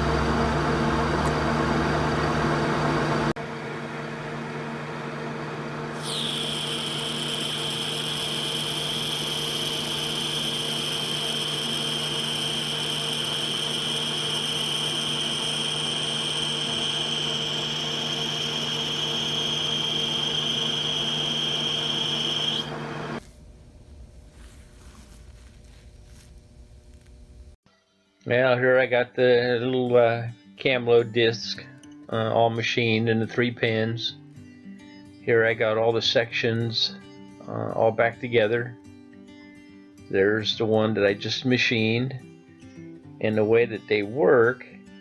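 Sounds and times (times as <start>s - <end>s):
high whine from cutting: 0.0s - 27.6s
machine tool running: 5.9s - 23.2s.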